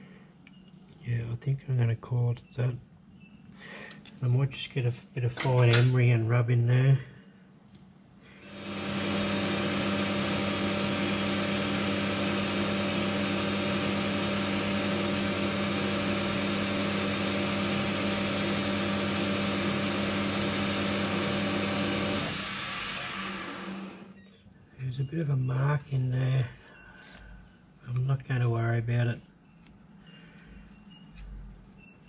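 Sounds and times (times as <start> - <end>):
metal lathe motor hum: 8.4 - 24.1.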